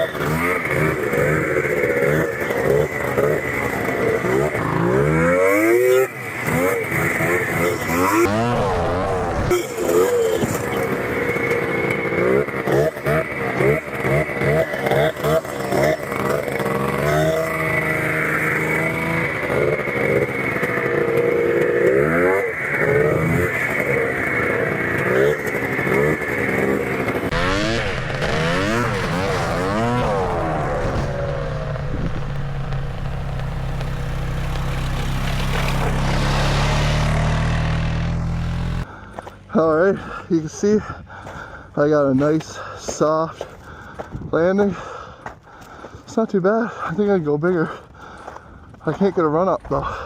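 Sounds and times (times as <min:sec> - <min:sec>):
snowmobile engine revving: 0:00.0 - 0:38.9.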